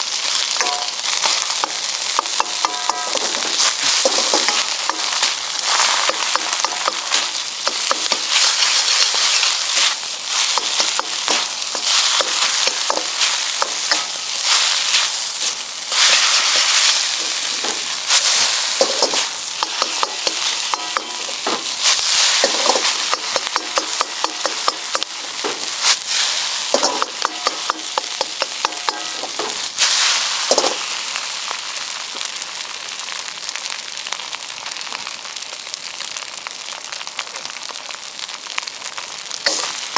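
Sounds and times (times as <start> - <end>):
rice sizzling in a wok: 0.0 - 39.9
metal ladle scraping a pan: 0.6 - 9.9, 15.9 - 31.0.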